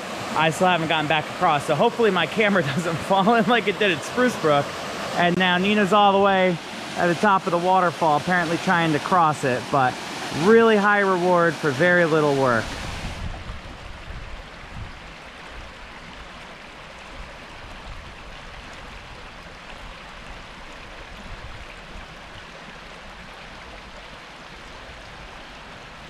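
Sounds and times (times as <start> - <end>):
water rushing over rocks: 0.0 - 26.0
wind rumble on microphone: 12.6 - 16.2, 17.0 - 22.5.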